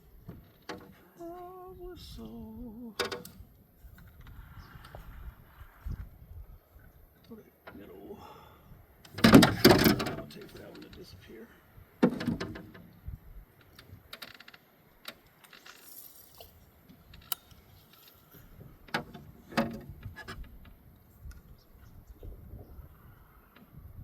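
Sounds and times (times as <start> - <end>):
fishing gear clicks and rattles: 13.6 - 20.5.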